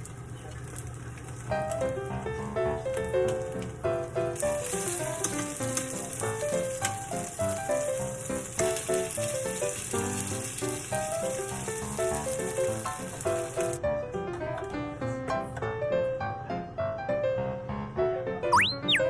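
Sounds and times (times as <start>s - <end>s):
food sizzling in hot oil: 0.0s - 13.8s.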